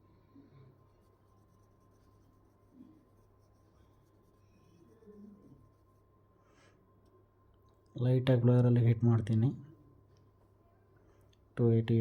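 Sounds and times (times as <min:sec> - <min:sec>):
faint electrical hum: 0:00.0 - 0:12.0
brush scrubbing circuit board: 0:00.9 - 0:06.1.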